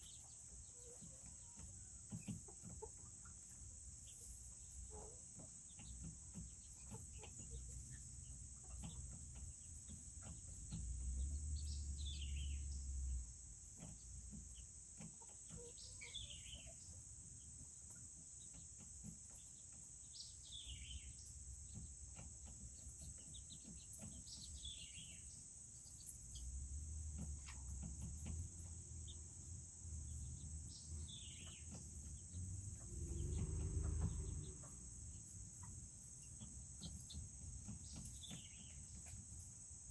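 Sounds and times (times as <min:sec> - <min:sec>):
low rumbles: 0:31.9 - 0:35.2.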